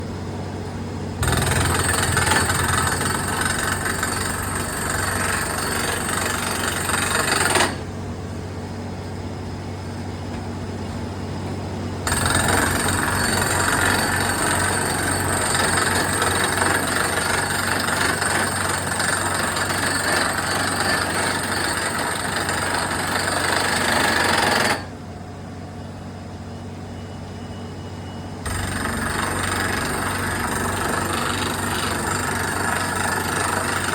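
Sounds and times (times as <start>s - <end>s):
drilling rig engine humming: 1.2s - 7.4s, 12.1s - 17.6s
harsh drilling noise: 1.2s - 7.8s, 12.1s - 24.9s, 28.5s - 33.9s.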